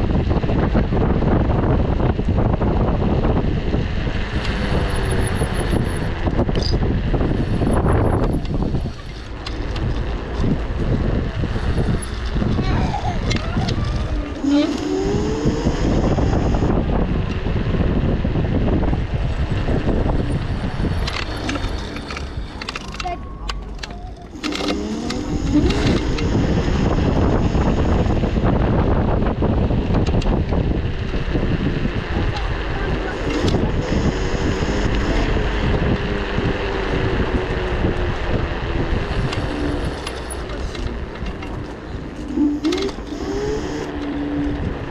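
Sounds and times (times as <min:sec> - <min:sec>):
off-road vehicle rumbling: 0:00.0 - 0:44.9
wind buffeting microphone: 0:00.0 - 0:44.9.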